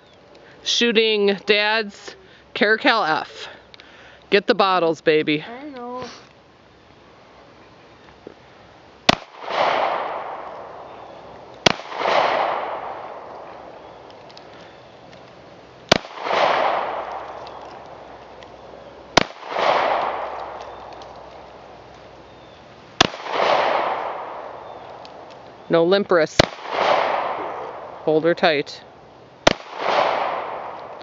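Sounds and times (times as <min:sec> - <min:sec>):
pistol shots with echo: 0:09.1 - 0:10.9, 0:11.6 - 0:13.4, 0:15.9 - 0:17.4, 0:19.2 - 0:20.6, 0:23.0 - 0:24.8, 0:26.4 - 0:28.0, 0:29.4 - 0:31.0.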